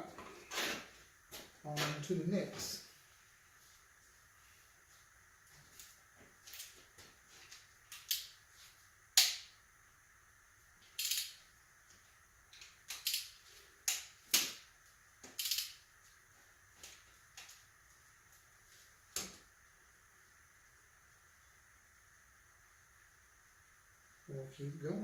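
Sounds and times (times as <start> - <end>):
hand tools clicking and clacking: 15.2 - 15.8.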